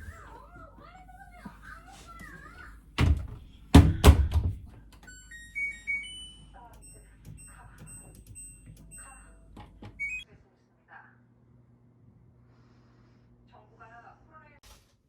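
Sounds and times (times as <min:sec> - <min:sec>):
appliance electronic beeps: 0:05.0 - 0:10.3.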